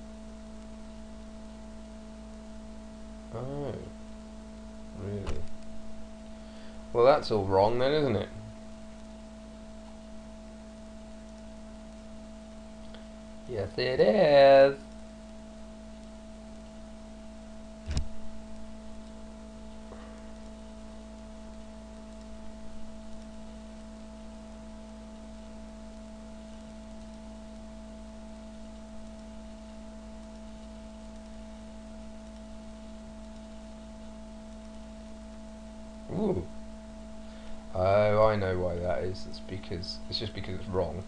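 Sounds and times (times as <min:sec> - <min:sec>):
electrical hum with tones: 0:00.0 - 0:41.0
sharp click: 0:05.2 - 0:05.7, 0:17.8 - 0:19.2.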